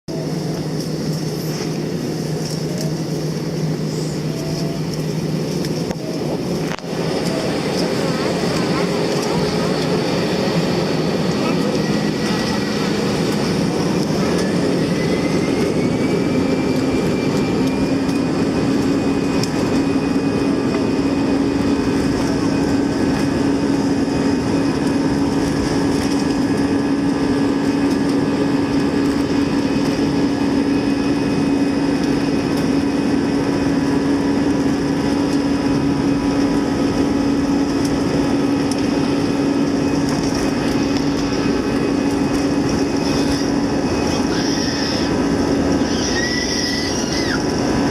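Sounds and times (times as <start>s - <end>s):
jet engine whine: 0.0s - 47.9s
jet engines running: 0.1s - 47.9s.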